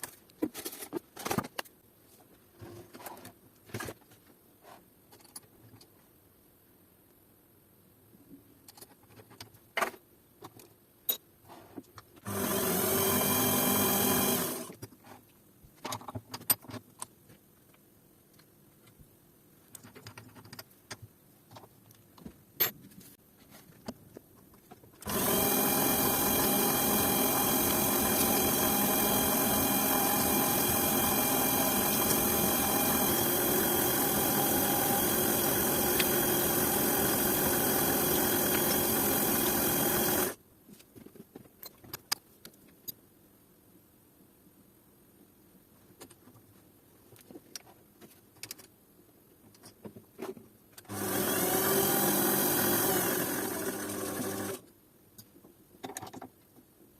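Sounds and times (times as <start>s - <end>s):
small electric power tool running: 12.3s - 14.7s, 25.0s - 40.4s, 50.9s - 54.6s
parts and tools clicking: 19.7s - 22.8s, 24.4s - 40.4s, 48.3s - 48.8s.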